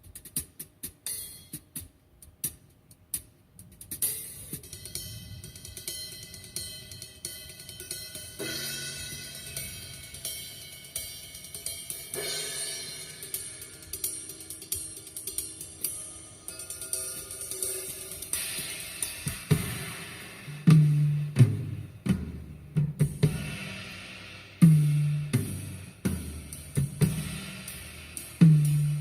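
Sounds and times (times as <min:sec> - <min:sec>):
snare and bass drum: 0:00.0 - 0:10.0, 0:17.7 - 0:29.0
cymbal and hi-hat strokes: 0:00.0 - 0:29.0.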